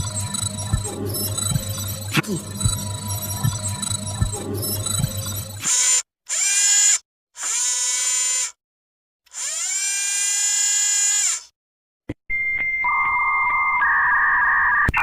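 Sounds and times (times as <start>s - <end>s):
steady electronic tones: 0.0s - 5.8s
small motor whirring: 2.8s - 8.6s, 9.3s - 11.5s.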